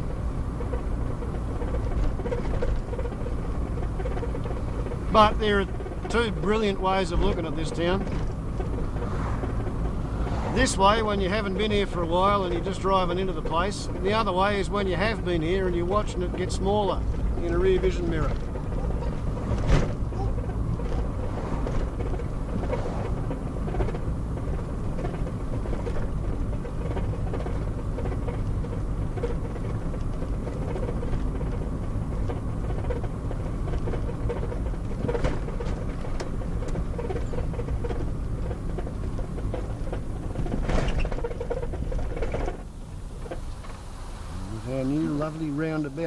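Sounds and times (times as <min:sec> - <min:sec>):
car engine and road noise: 0:00.0 - 0:46.0.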